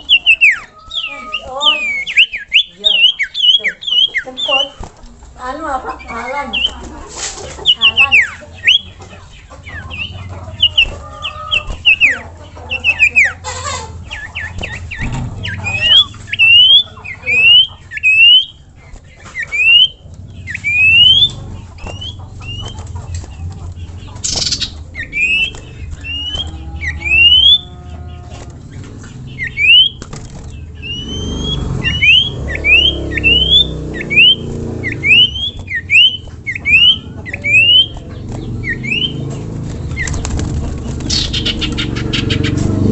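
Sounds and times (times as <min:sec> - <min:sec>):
songbird whistling: 0:00.0 - 0:04.8, 0:06.0 - 0:06.8, 0:07.6 - 0:13.4, 0:14.0 - 0:23.2, 0:23.9 - 0:28.2, 0:28.8 - 0:39.3, 0:41.1 - 0:42.5
low background rumble: 0:07.7 - 0:42.9.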